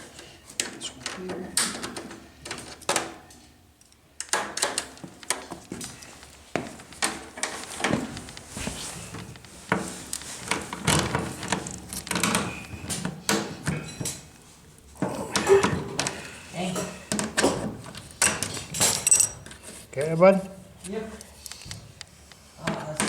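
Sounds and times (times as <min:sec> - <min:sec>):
parts knocking and clattering: 0:09.2 - 0:14.4, 0:16.8 - 0:19.6.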